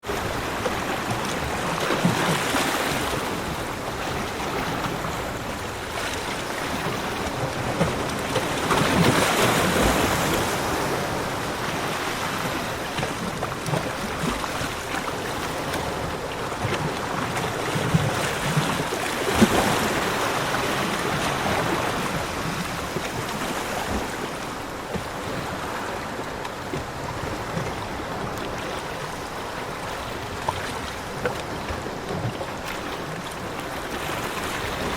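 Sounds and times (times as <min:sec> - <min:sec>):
ocean waves breaking: 0:00.0 - 0:34.9
surf washing in and out: 0:00.0 - 0:34.9.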